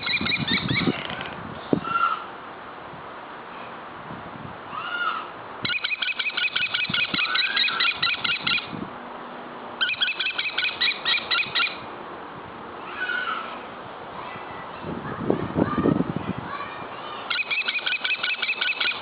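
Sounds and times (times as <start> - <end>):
bird call: 0.0 - 1.0, 4.8 - 8.7, 9.8 - 11.8, 17.2 - 19.0
bird singing rapid high notes: 0.0 - 1.0, 5.6 - 8.7, 9.8 - 11.8, 17.2 - 19.0.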